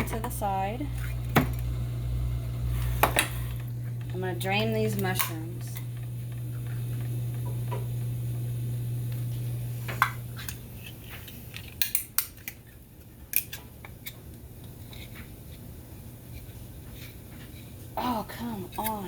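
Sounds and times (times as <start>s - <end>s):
steady low hum: 0.0s - 11.6s.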